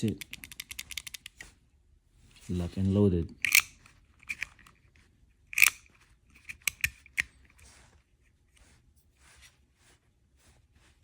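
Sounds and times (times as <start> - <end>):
utility knife blade clicks: 5.6 - 5.8.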